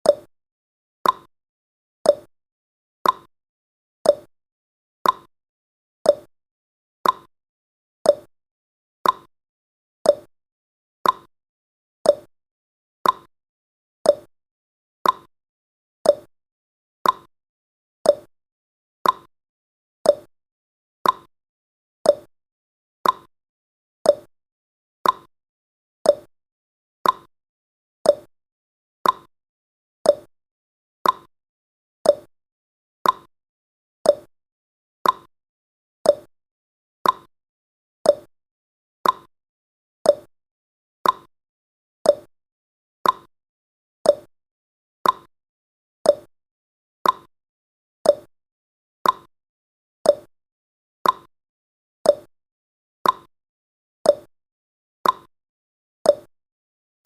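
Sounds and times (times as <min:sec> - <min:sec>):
timer ticking: 0:01.0 - 0:01.3, 0:02.1 - 0:02.3, 0:03.0 - 0:03.3, 0:04.1 - 0:04.3, 0:05.0 - 0:05.3, 0:06.1 - 0:06.3, 0:07.0 - 0:07.3, 0:08.1 - 0:08.3, 0:09.0 - 0:09.3, 0:10.1 - 0:10.3, 0:11.0 - 0:11.3, 0:12.1 - 0:12.3, 0:13.0 - 0:13.3, 0:14.1 - 0:14.3, 0:15.0 - 0:15.3, 0:16.0 - 0:16.3, 0:17.0 - 0:17.3, 0:18.1 - 0:18.3, 0:19.0 - 0:19.3, 0:20.1 - 0:20.3, 0:21.0 - 0:21.3, 0:22.0 - 0:22.3, 0:23.0 - 0:23.3, 0:24.1 - 0:24.3, 0:25.0 - 0:25.3, 0:26.1 - 0:26.3, 0:27.0 - 0:27.3, 0:28.0 - 0:28.3, 0:29.0 - 0:29.3, 0:30.0 - 0:30.3, 0:31.0 - 0:31.3, 0:32.0 - 0:32.3, 0:33.0 - 0:33.3, 0:34.0 - 0:34.3, 0:35.0 - 0:35.3, 0:36.0 - 0:36.3, 0:37.0 - 0:37.3, 0:38.1 - 0:38.3, 0:39.0 - 0:39.3, 0:40.1 - 0:40.3, 0:41.0 - 0:41.3, 0:42.0 - 0:42.3, 0:43.0 - 0:43.3, 0:44.1 - 0:44.3, 0:45.0 - 0:45.3, 0:46.1 - 0:46.3, 0:47.0 - 0:47.3, 0:48.0 - 0:48.3, 0:49.0 - 0:49.3, 0:50.1 - 0:50.3, 0:51.0 - 0:51.3, 0:52.1 - 0:52.3, 0:53.0 - 0:53.3, 0:54.1 - 0:54.3, 0:55.0 - 0:55.3, 0:56.1 - 0:56.3.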